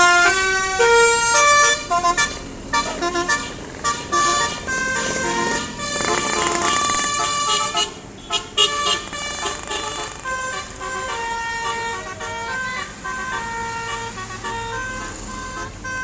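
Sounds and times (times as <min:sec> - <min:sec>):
multi-tone bus horn playing a tune: 0:00.0 - 0:16.0
sharp cracks: 0:04.9 - 0:07.8, 0:09.0 - 0:11.0.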